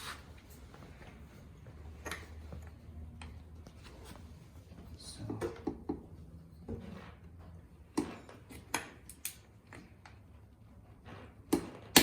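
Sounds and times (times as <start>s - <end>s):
metallic clicks of wrench and socket: 8.7s - 9.4s.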